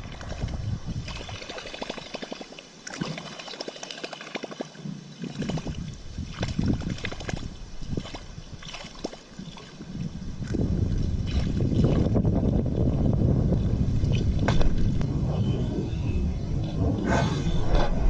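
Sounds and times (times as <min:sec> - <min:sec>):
water sloshing and splashing: 0:00.0 - 0:13.0.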